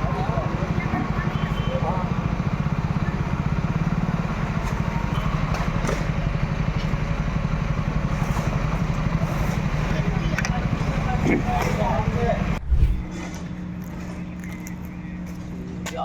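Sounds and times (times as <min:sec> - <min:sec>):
engine running with pulsing throb: 0:00.0 - 0:15.8.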